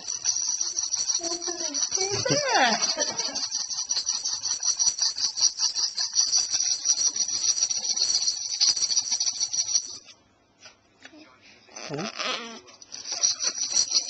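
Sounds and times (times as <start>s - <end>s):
toy shaker rattling: 0.0s - 10.2s, 12.5s - 14.0s.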